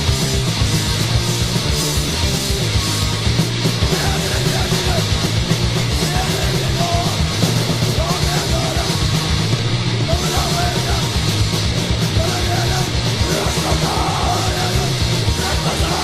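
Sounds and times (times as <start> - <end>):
bass guitar: 0.0 - 16.0
distorted guitar: 0.0 - 16.0
fast drums: 0.0 - 16.0
shouted vocals: 3.9 - 5.2, 5.9 - 7.3, 7.9 - 9.1, 10.0 - 11.2, 12.0 - 16.0.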